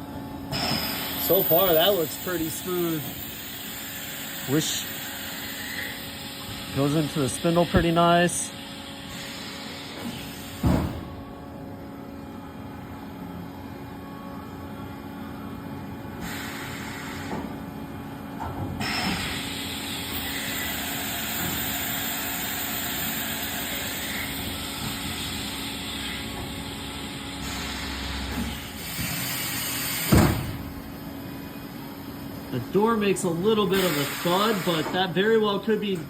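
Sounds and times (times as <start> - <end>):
machine door closing thud: 7.7 - 8.1, 10.6 - 11.2, 30.1 - 30.7
air hissing: 33.6 - 35.0.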